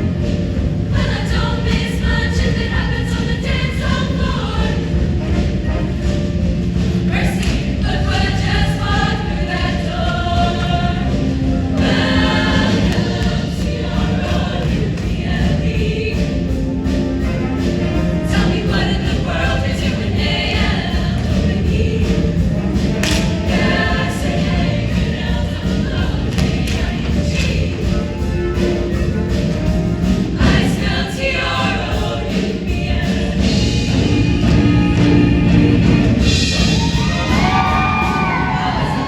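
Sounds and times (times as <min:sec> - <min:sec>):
choir singing: 0:00.0 - 0:39.0
loud accompaniment with thumping beat: 0:00.0 - 0:39.0.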